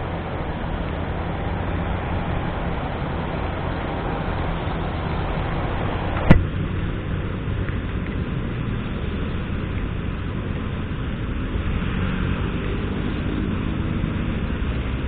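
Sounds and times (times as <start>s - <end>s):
motorcycle engine hum: 0.0s - 15.0s
road noise: 0.0s - 15.0s
wind noise: 0.0s - 15.0s.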